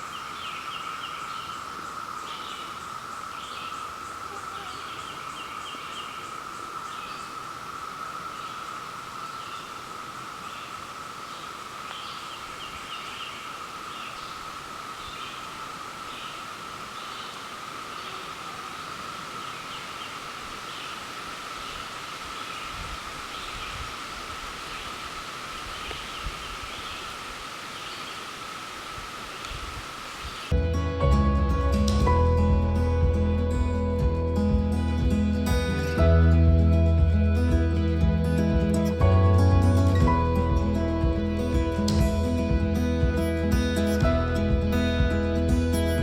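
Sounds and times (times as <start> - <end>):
cicadas droning: 0.0 - 30.6.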